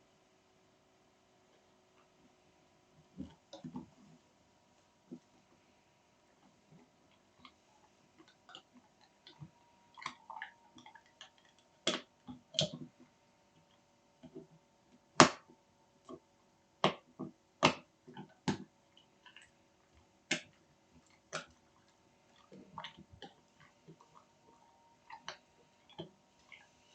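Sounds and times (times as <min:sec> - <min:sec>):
faint steady hum: 0:00.0 - 0:26.9
sharp clicks or smacks: 0:15.2 - 0:15.5.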